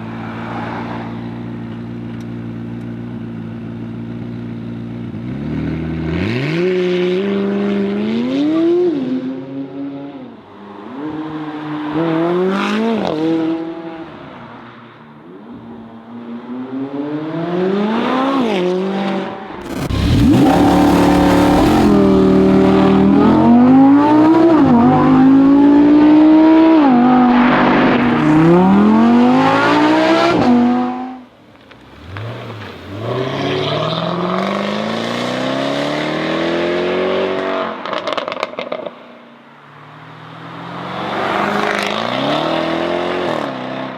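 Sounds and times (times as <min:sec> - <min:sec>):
sports car engine accelerating: 0:19.4 - 0:38.3.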